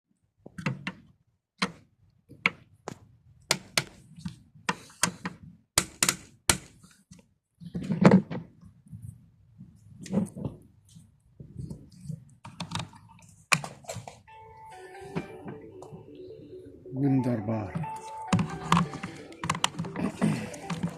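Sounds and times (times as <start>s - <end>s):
tools clicking and knocking: 4.7s - 6.8s.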